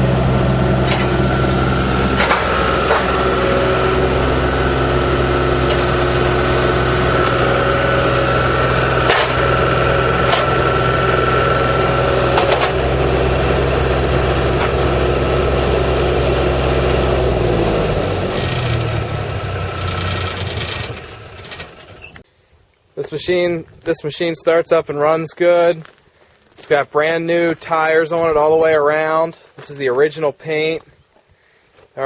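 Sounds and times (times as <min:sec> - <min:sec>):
diesel engine running: 0:00.0 - 0:22.2.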